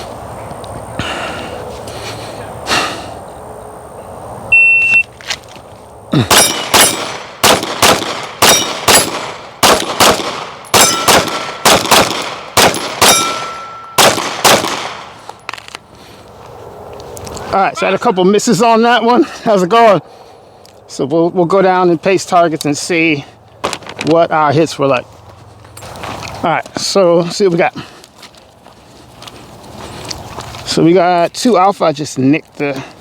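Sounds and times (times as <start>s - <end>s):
electronic beep: 4.5s - 5.1s
steel targets clanging: 6.3s - 7.2s, 8.4s - 9.2s, 10.7s - 11.7s, 12.7s - 14.0s
pistol shots: 6.3s - 15.2s.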